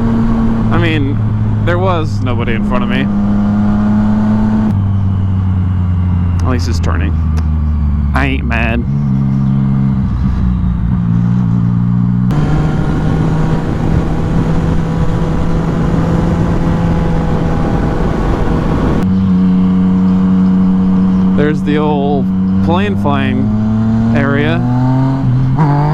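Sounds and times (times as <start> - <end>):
motorcycle engine running: 0.0 - 25.9
wind rushing over microphone: 0.0 - 25.9.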